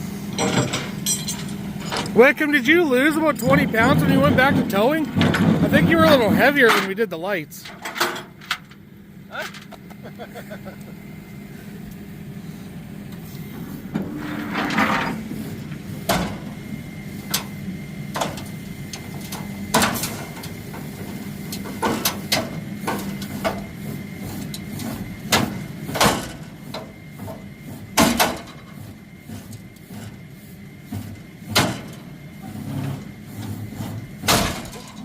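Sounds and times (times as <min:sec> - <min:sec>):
truck engine running: 0:00.0 - 0:35.0
sharp metal clanks and knocks: 0:00.3 - 0:02.2, 0:06.6 - 0:07.0, 0:34.2 - 0:35.0.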